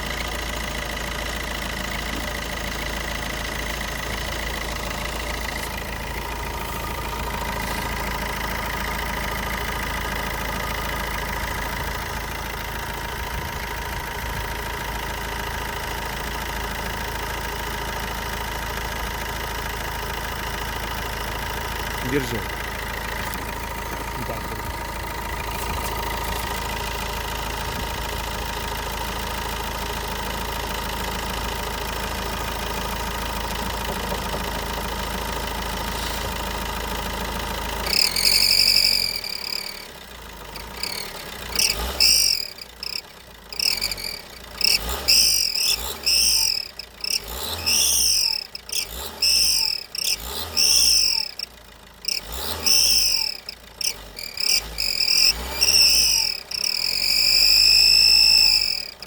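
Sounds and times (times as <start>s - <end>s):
diesel engine idling: 0.0s - 59.0s
high repeated chirping calls: 40.8s - 59.0s
thin whistle under bonnet: 54.4s - 59.0s.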